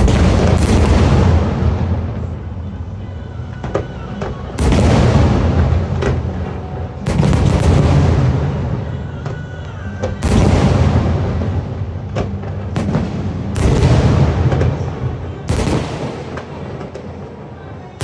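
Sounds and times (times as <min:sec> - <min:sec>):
sharp firework cracks: 0:00.0 - 0:02.4, 0:10.2 - 0:17.4
fireworks booming: 0:00.0 - 0:02.7, 0:03.7 - 0:09.4, 0:10.0 - 0:18.0
music: 0:00.0 - 0:18.0.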